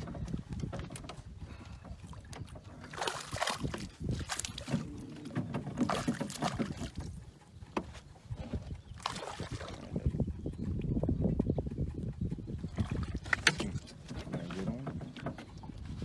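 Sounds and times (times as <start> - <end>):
water lapping against boat hull: 0.0 - 16.0.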